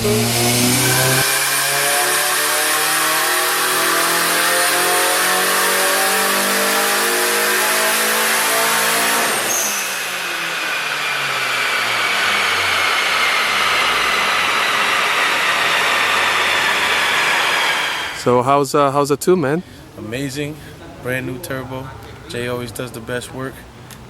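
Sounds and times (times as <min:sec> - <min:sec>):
turbocharged car engine revving down: 0:00.0 - 0:18.3.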